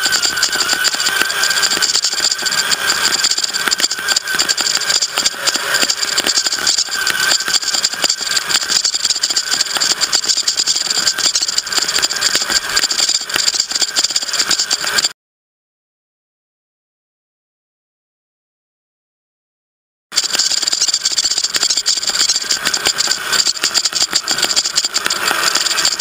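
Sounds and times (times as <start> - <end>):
chassis rattle: 0.0 - 15.1, 20.1 - 26.0
rc car motor whine: 0.0 - 15.2, 20.1 - 26.0.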